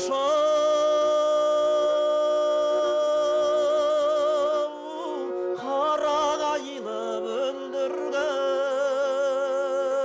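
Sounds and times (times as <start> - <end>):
bowed string accompaniment: 0.0 - 10.0.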